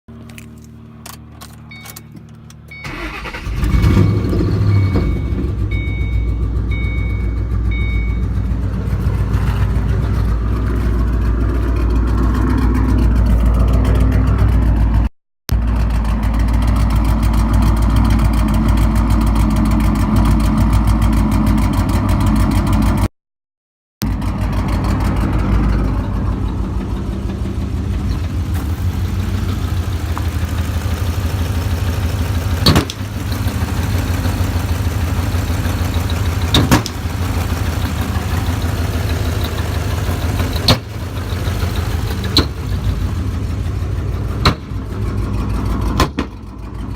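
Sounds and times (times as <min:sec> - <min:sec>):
car engine idling roughly: 0:04.6 - 0:14.9, 0:15.5 - 0:23.0, 0:24.0 - 0:46.9
sharp engine pops: 0:32.6 - 0:33.4, 0:36.4 - 0:37.2, 0:44.4 - 0:44.8, 0:45.9 - 0:46.4.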